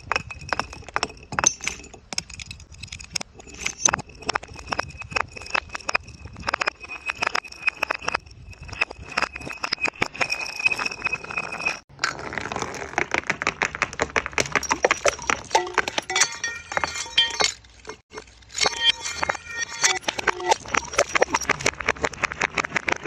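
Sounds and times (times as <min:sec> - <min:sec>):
glass bottles smashing: 0:14.4 - 0:21.5.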